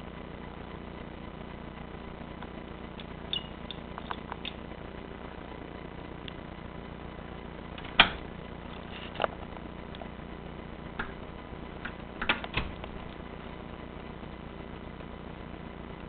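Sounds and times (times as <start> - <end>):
steady low hum: 0.0 - 16.0
sharp clicks and knocks: 7.8 - 8.3, 11.0 - 13.2.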